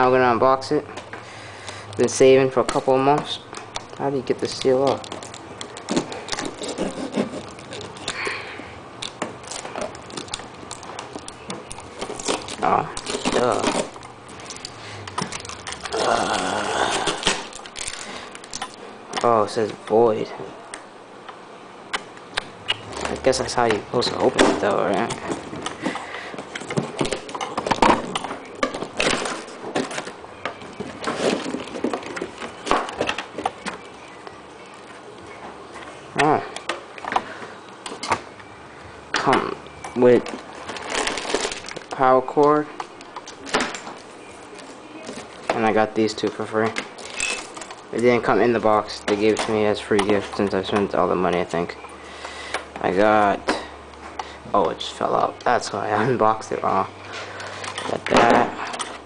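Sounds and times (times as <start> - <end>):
cardboard box rustling and scraping: 6.4 - 7.9.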